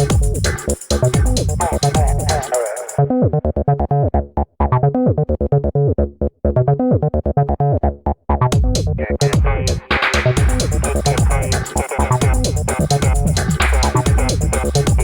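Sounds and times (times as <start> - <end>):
dance beat: 0.0 - 3.0, 8.5 - 15.0
synthesizer keyboard notes: 0.0 - 3.4, 9.5 - 15.0.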